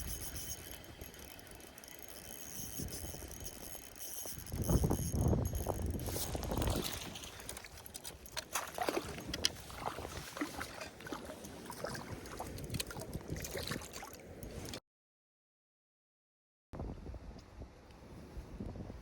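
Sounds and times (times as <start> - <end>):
water splashing and gurgling: 0.0 - 14.8.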